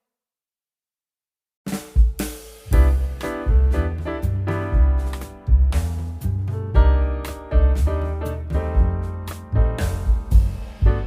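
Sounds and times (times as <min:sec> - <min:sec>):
keyboard chords over bass beat: 0:02.7 - 0:11.0.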